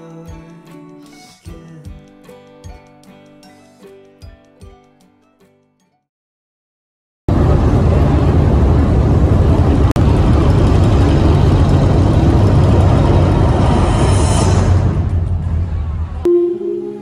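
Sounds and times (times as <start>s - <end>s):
loud steady rumbling: 7.3s - 16.3s.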